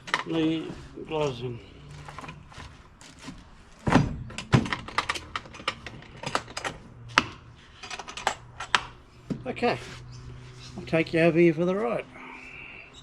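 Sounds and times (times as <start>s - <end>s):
dull thuds: 3.3s - 4.7s
sharp clicks and light knocks: 4.3s - 9.4s.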